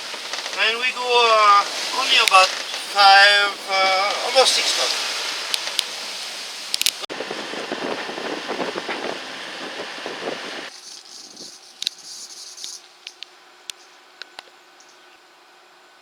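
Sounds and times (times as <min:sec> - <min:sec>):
rushing water: 0:00.0 - 0:10.7
wind: 0:00.0 - 0:16.0
sharp clicks: 0:06.7 - 0:07.0.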